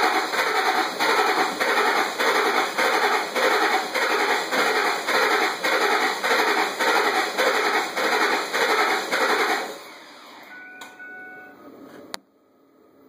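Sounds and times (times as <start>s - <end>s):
engine cranking on starter: 0.0s - 10.6s
electronic chime tones: 10.5s - 11.6s.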